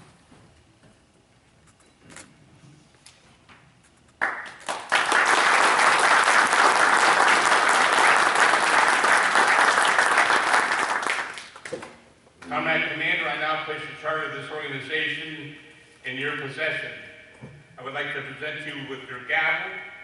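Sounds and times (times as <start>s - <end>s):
audience applause: 4.2s - 11.8s.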